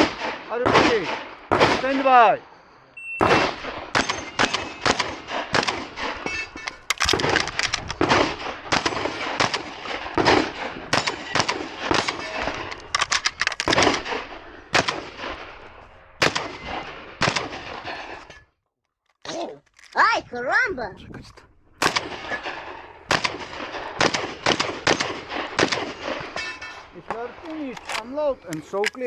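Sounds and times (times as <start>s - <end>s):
shotgun shots: 0.0s - 2.3s, 3.2s - 18.3s, 21.8s - 29.0s.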